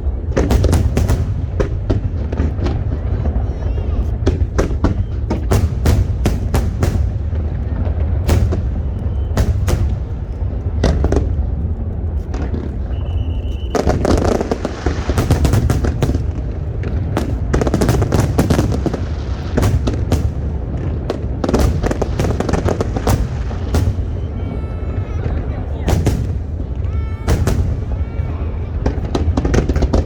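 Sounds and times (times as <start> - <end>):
continuous low rumble: 0.0 - 30.0
firework bangs: 0.0 - 30.0
firework crackling: 0.0 - 30.0
high firework whistle: 4.6 - 6.5, 8.3 - 11.2, 12.5 - 16.2, 21.4 - 30.0.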